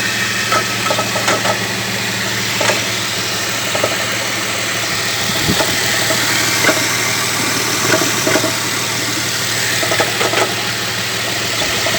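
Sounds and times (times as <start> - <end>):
car engine idling: 0.0 - 11.9
engine knocking: 0.0 - 11.9.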